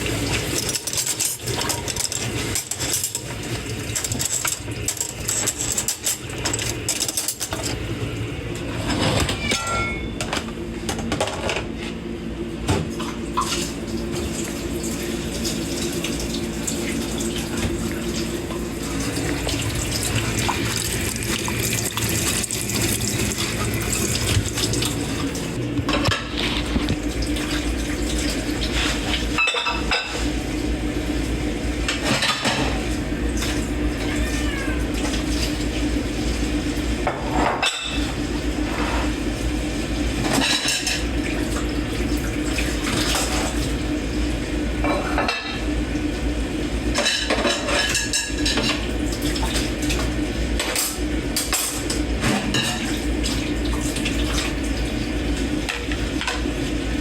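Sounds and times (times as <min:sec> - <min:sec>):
dishes clinking and clattering: 0:00.0 - 0:07.8, 0:08.7 - 0:11.7, 0:25.8 - 0:27.5, 0:28.8 - 0:30.3, 0:31.9 - 0:35.2, 0:37.0 - 0:39.1, 0:40.2 - 0:41.4, 0:44.8 - 0:45.7, 0:46.9 - 0:53.0
tap water running: 0:00.0 - 0:08.6, 0:12.7 - 0:57.0.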